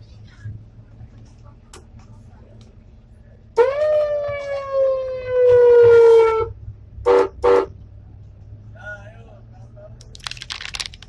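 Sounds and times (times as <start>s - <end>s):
loud horn blasts: 7.0s - 7.7s.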